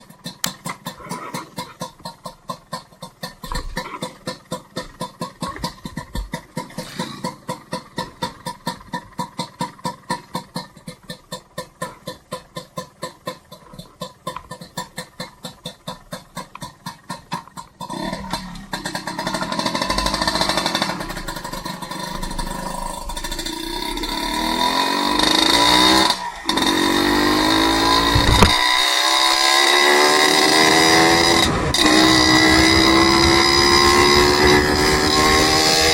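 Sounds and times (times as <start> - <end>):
vehicle engine rhythmic pulsing: 0.0 - 35.9
engine revving: 17.8 - 35.9
road noise: 17.8 - 35.9.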